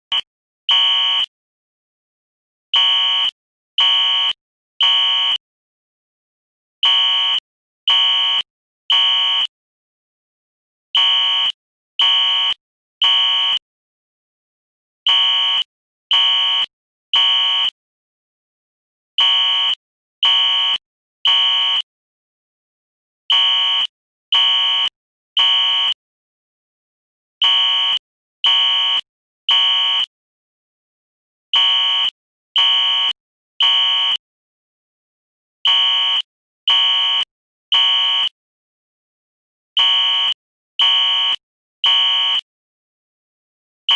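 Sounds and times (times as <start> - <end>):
fire alarm beeping: 0.1 - 1.3, 2.8 - 5.4, 6.8 - 9.5, 11.0 - 13.6, 15.1 - 17.8, 19.2 - 21.9, 23.3 - 26.0, 27.4 - 30.1, 31.6 - 34.2, 35.7 - 38.4, 39.8 - 42.5.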